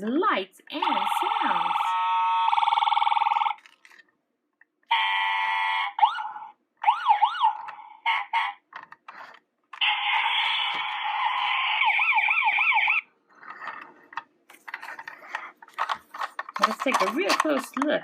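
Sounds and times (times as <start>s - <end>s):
toy ambulance electronic siren: 0.8s - 3.6s, 4.9s - 13.8s.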